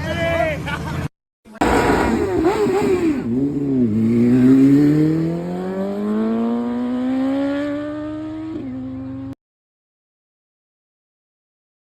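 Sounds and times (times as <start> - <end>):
motorcycle engine accelerating: 1.6 - 9.4.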